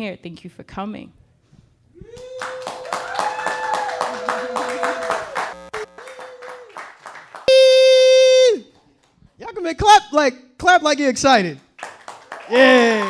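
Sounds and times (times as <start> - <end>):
voices cheering: 2.1 - 7.4, 12.4 - 13.0
audience clapping: 2.1 - 7.5, 11.6 - 13.0.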